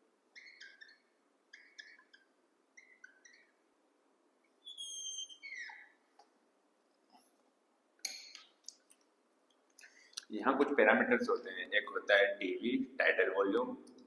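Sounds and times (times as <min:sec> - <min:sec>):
marker squeaking: 0:00.3 - 0:03.6, 0:04.6 - 0:06.0.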